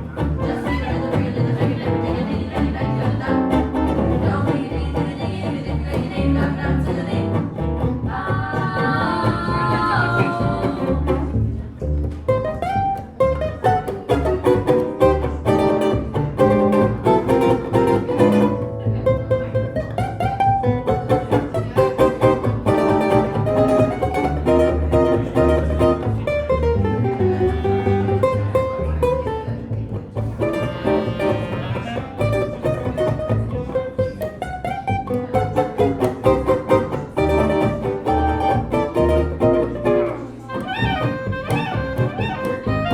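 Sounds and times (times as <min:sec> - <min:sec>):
live band playing instrumental: 0:09.8 - 0:42.9.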